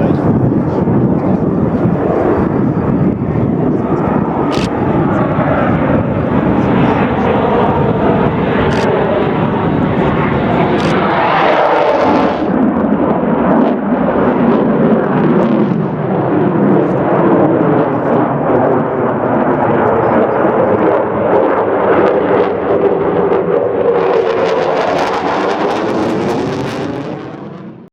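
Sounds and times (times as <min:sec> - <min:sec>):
fighter jet afterburner roar: 0:00.0 - 0:27.9.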